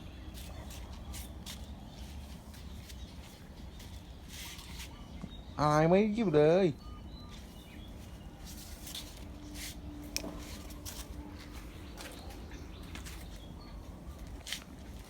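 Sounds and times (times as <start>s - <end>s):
high bird chirps: 6.7s - 8.5s.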